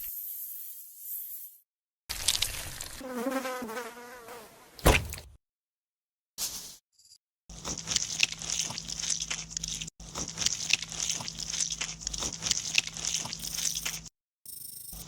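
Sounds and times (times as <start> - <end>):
dense crackling and crunching: 2.1 - 3.0, 7.5 - 14.1.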